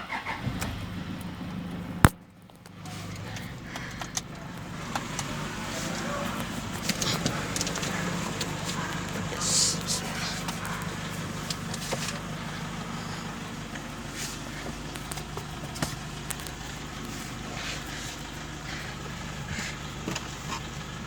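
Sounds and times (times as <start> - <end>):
diesel engine running: 0.0 - 21.0.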